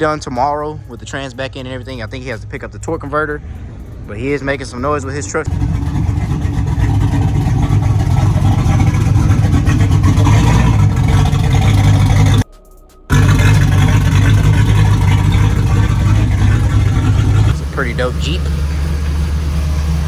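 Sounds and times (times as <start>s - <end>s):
engine running loud: 3.4s - 12.4s, 13.1s - 20.0s.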